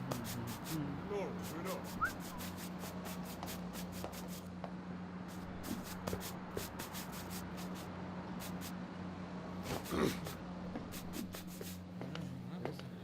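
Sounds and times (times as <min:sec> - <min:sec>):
scratchy rubbing strokes: 0:00.0 - 0:04.5, 0:05.3 - 0:08.7, 0:09.7 - 0:11.8.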